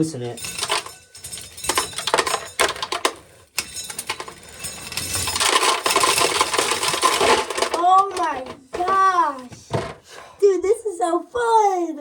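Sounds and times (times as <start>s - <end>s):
corn kernels rattling into pail: 0.4s - 9.1s.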